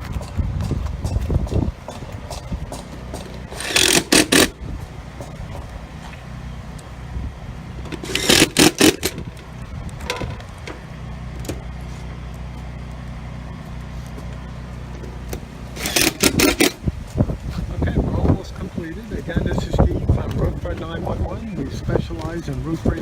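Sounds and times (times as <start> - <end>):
loud clattering knocks: 0.0 - 4.6, 7.9 - 9.3, 15.8 - 16.8
engine running: 0.0 - 23.0.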